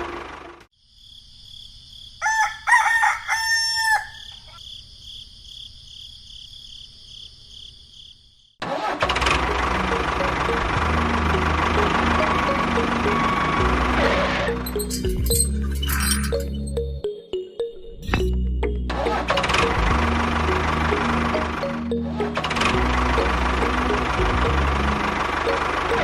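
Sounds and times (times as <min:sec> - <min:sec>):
loud engine-like running noise: 0:00.0 - 0:00.7, 0:08.6 - 0:15.2, 0:18.9 - 0:26.0
rooster crowing: 0:02.2 - 0:04.6.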